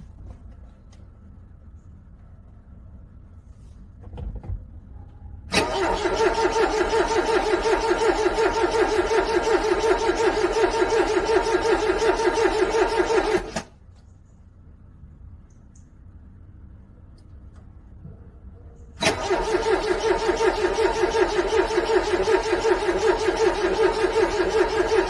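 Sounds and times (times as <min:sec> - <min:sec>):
car engine cranking: 0:05.5 - 0:13.7, 0:19.0 - 0:25.0.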